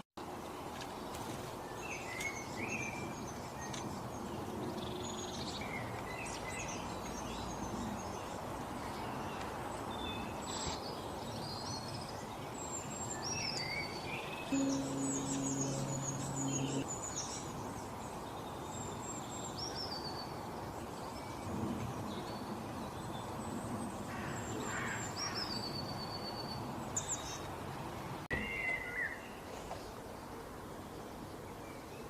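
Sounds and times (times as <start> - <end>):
outdoor background hiss: 0.2 - 32.0
birds chirping: 1.9 - 17.5
low steady hum: 14.5 - 16.9.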